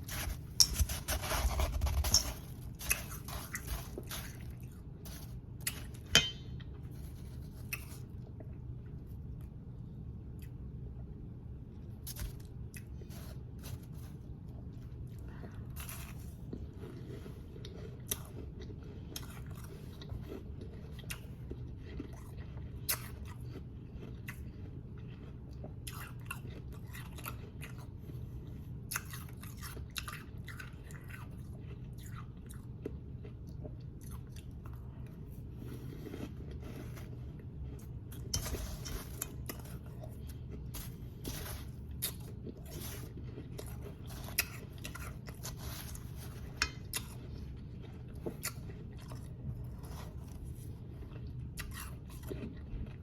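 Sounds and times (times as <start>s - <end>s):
chewing crunchy ice: 0.0s - 9.5s, 11.8s - 53.0s.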